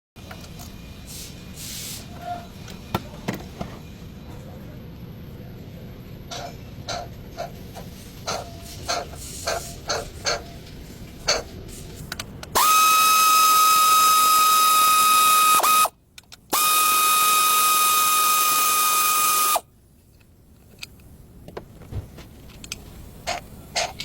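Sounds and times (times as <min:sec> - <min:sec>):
power tool whining: 0:12.6 - 0:15.9, 0:16.5 - 0:19.6.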